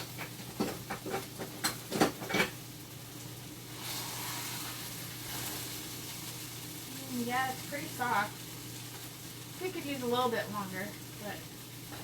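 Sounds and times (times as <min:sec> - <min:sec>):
baking pan and utensils clattering: 0:00.0 - 0:02.6.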